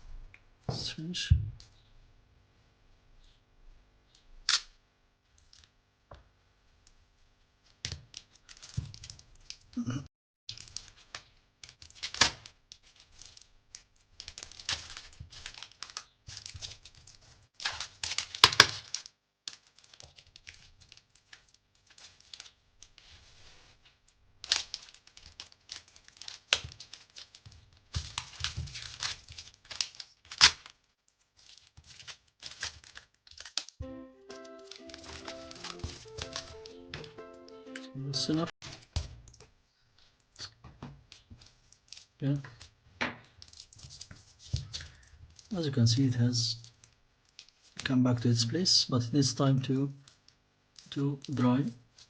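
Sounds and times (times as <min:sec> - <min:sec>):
rustling handling: 0:10.6 - 0:33.7, 0:34.3 - 0:37.2, 0:38.6 - 0:45.5
tape ripping off roll: 0:11.7 - 0:13.5, 0:14.2 - 0:23.0, 0:24.4 - 0:30.8.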